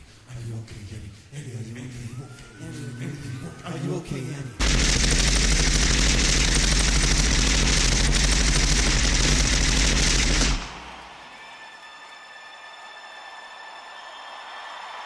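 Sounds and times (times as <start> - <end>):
rapid automatic gunfire: 4.6 - 11.0.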